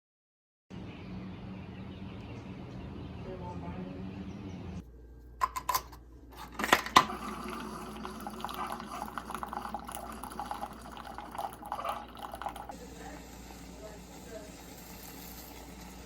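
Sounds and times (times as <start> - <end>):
water pouring into container: 7.0 - 12.8.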